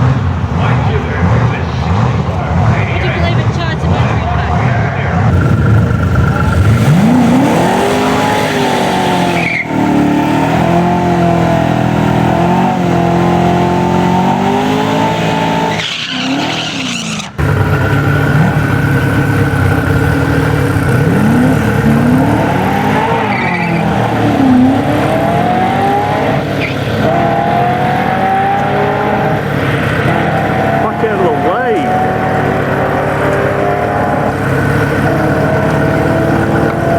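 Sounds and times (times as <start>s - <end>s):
car engine accelerating: 0.0s - 36.9s.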